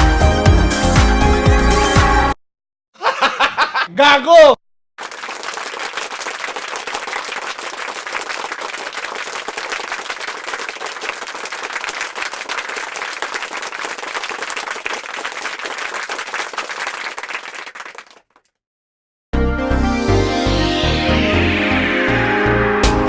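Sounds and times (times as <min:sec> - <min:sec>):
crowd applause: 0:05.0 - 0:18.3.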